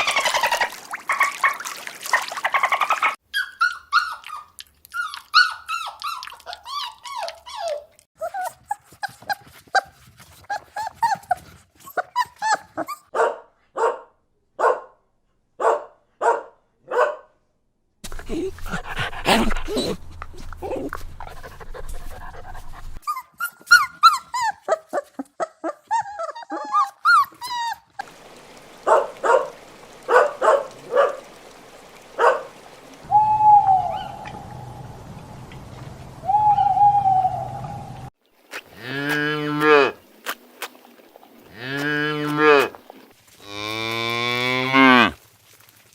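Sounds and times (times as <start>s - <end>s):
dogs yelping and barking: 0.0s - 14.0s, 21.2s - 32.6s
dogs whimpering: 2.5s - 13.1s, 20.6s - 28.1s
steady hooting call: 33.0s - 35.5s, 36.1s - 38.1s.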